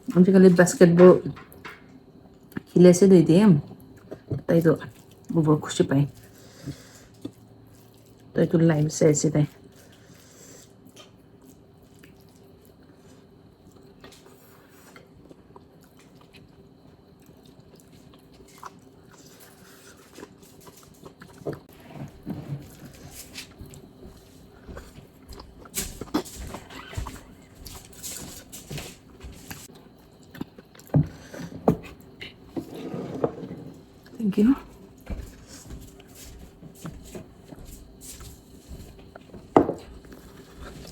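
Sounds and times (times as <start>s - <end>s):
person chewing and biting: 17.2s - 21.7s, 29.4s - 30.9s.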